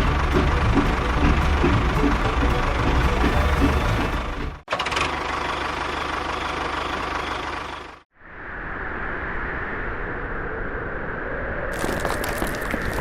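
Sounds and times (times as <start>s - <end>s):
dull steady running sound: 0.0s - 8.0s
small engine running: 0.0s - 8.0s.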